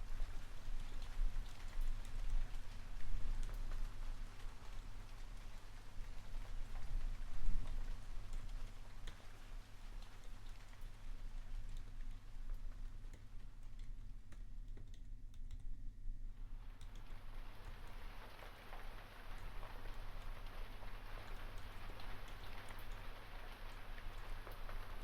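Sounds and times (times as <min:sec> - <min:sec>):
steady rain: 0:00.0 - 0:25.0.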